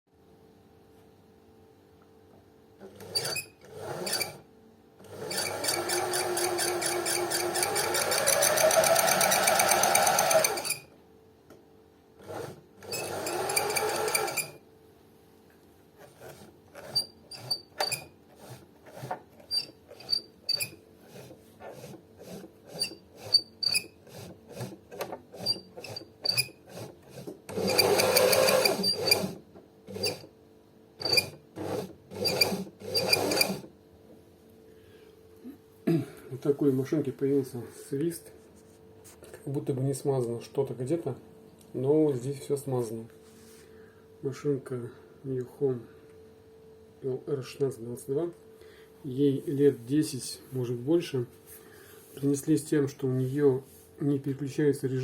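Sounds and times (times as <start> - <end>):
sewing machine running: 2.8 - 4.4, 5.0 - 10.9, 12.2 - 14.6, 16.0 - 30.3, 31.0 - 33.7
sewing machine whistle: 3.0 - 4.4, 5.1 - 10.9, 12.4 - 14.6, 16.8 - 18.6, 19.5 - 24.0, 25.4 - 26.6, 27.5 - 30.3, 31.0 - 33.7.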